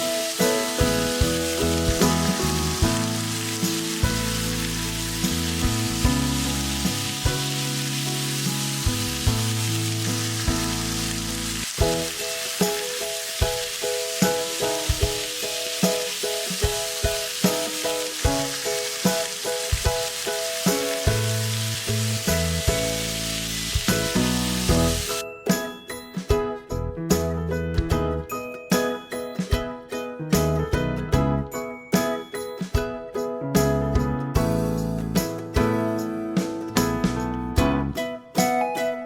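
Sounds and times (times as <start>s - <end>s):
background music with a beat: 0.0s - 9.7s, 11.6s - 39.0s
food sizzling in a pan: 0.0s - 25.2s.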